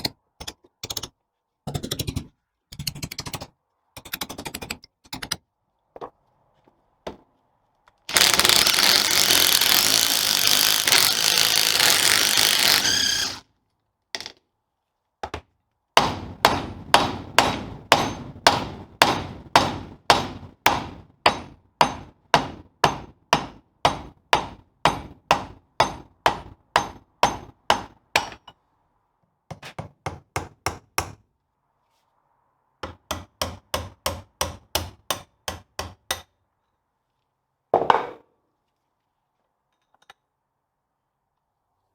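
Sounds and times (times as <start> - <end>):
hammer striking metal: 16.0 - 28.5.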